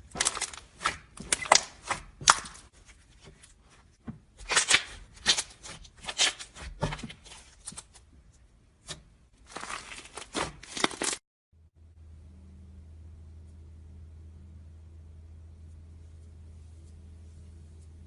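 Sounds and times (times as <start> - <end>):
slime crackling and popping: 0.1 - 2.7.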